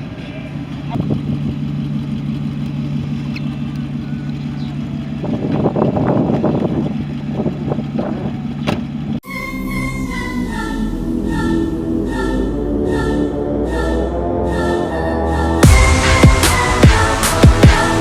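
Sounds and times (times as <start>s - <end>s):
vehicle engine running: 0.0s - 18.0s
choir music: 9.2s - 18.0s.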